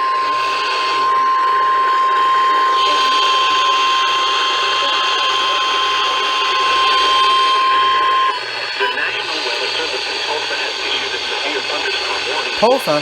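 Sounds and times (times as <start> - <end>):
radio hiss: 0.0 - 13.0
steady alarm tone: 0.0 - 13.0.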